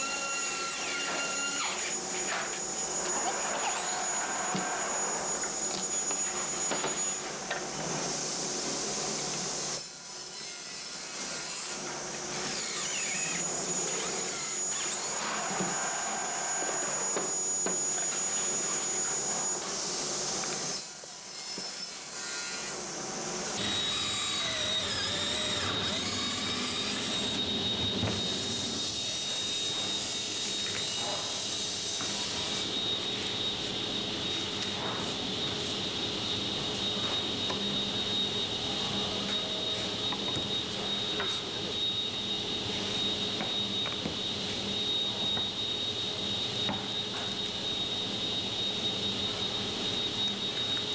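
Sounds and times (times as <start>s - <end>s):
power drill boring into wood: 0.0s - 2.0s, 12.6s - 17.2s, 23.6s - 27.4s.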